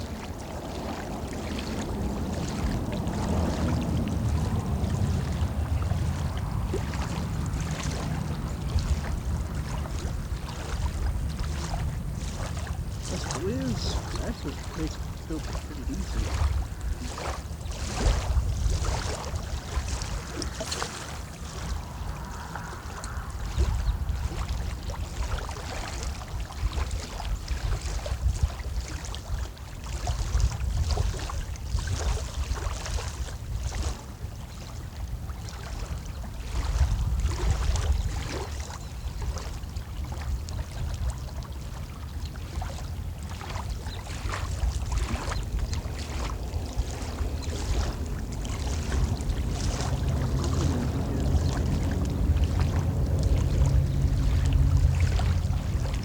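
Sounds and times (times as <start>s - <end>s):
water lapping: 0.0s - 56.0s
wind buffeting microphone: 0.0s - 56.0s.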